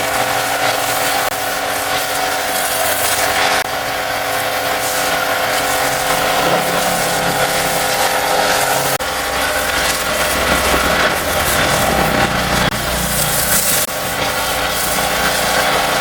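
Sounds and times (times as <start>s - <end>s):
cleaning machine hissing and humming: 0.0s - 16.0s.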